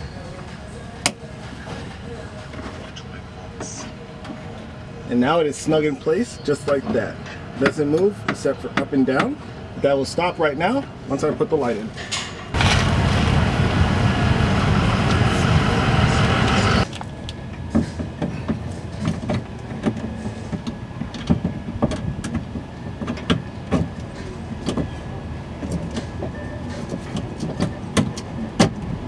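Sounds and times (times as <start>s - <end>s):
loud rushing noise: 12.6s - 16.8s.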